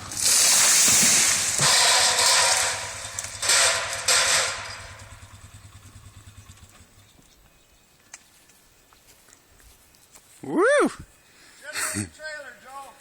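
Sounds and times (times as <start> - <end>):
dead tree crashing down: 0.0 - 5.5
loud rushing bursts: 0.0 - 5.7
small engine idling: 2.6 - 7.7.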